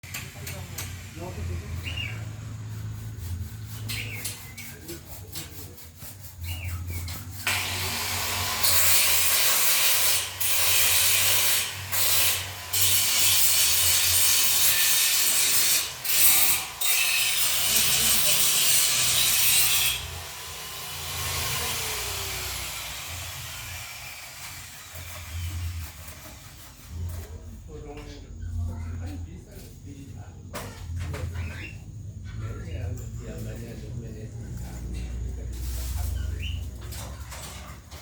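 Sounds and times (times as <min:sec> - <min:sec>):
rasping strokes on steel: 0:00.1 - 0:27.4
harsh hiss of cutting metal: 0:07.5 - 0:25.5.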